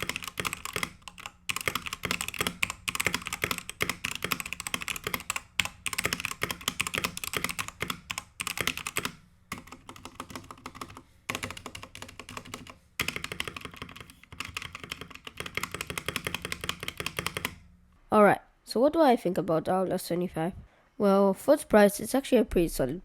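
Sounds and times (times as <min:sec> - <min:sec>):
typing on mechanical keyboard: 0:00.0 - 0:17.6.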